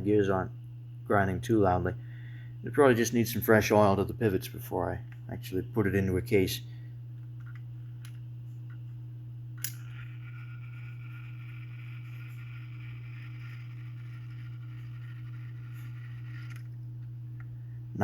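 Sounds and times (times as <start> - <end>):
clock gear train whirring: 9.6 - 16.8.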